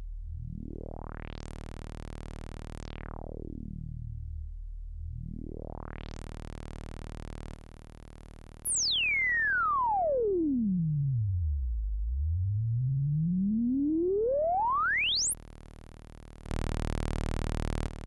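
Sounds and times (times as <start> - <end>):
buzzy synthesizer note: 14.9 - 18.0.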